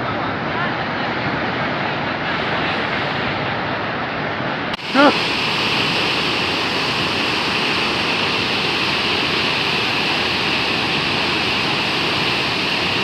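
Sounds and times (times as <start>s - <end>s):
waterfall rushing: 4.8s - 13.0s.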